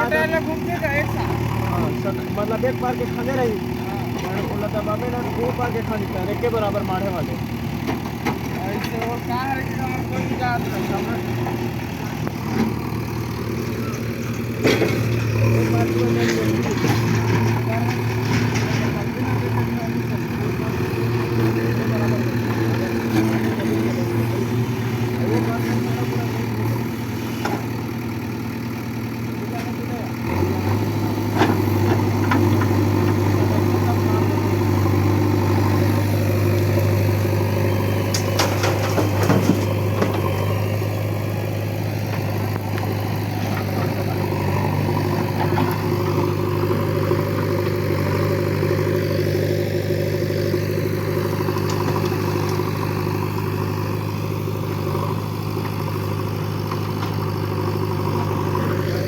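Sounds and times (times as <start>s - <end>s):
diesel engine running: 0.0s - 59.0s
clattering knocks: 38.1s - 40.3s.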